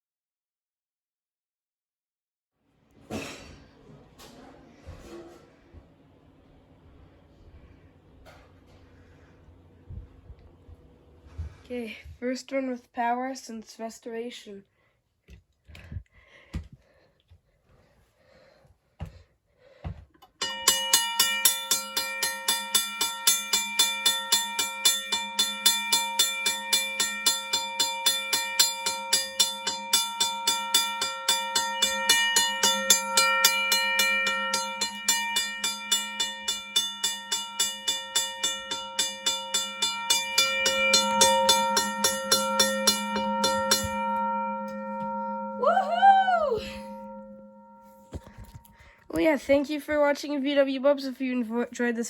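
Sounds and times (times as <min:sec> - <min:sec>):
railroad crossing bell ringing: 0:20.4 - 0:49.0.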